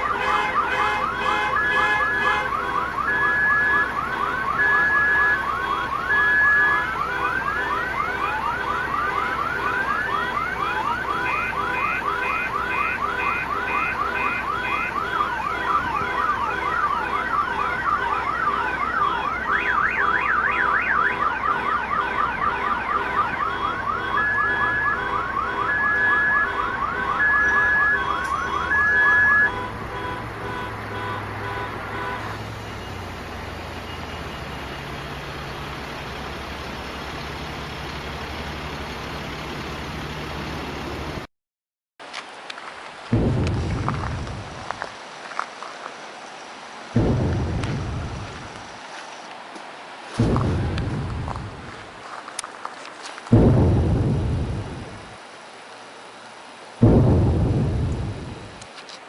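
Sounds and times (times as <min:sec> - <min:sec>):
car alarm siren: 0:00.0 - 0:36.4, 0:47.0 - 0:48.6.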